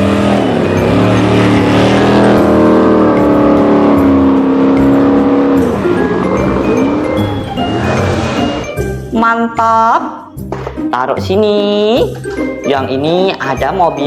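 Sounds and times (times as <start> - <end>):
engine revving: 0.0 - 9.1.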